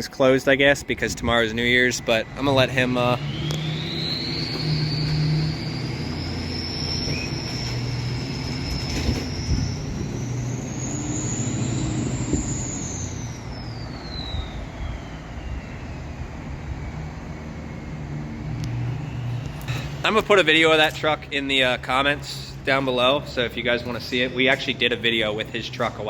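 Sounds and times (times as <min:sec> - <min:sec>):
high mechanical whine: 0:00.0 - 0:26.0
low rumble: 0:00.9 - 0:19.7.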